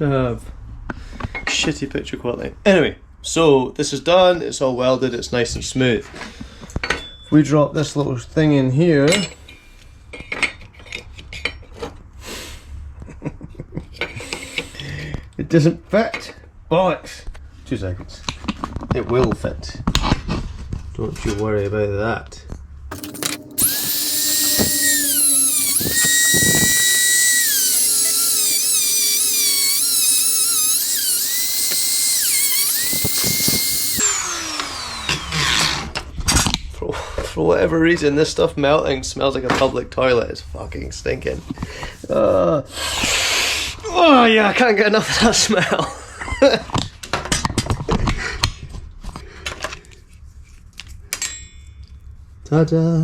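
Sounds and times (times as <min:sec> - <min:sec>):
small parts clicking and knocking: 0:22.9 - 0:35.2
power tool cutting plastic: 0:22.9 - 0:36.1
tool spinning down: 0:22.9 - 0:36.1.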